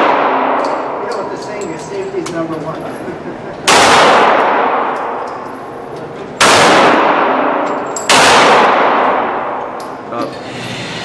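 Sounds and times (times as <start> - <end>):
pistol shots echoing: 0.0 - 1.0, 3.6 - 5.4, 6.4 - 9.8.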